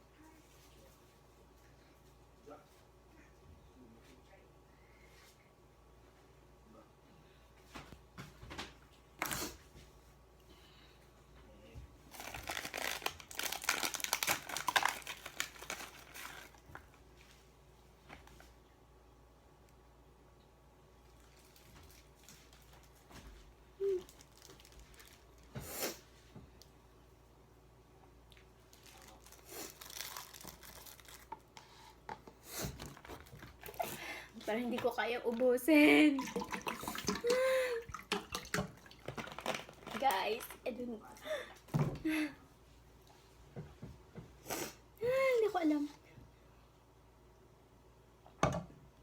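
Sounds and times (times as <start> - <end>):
thin material crinkling: 12.1 - 17.0, 23.8 - 25.6, 28.6 - 31.8, 38.9 - 40.5.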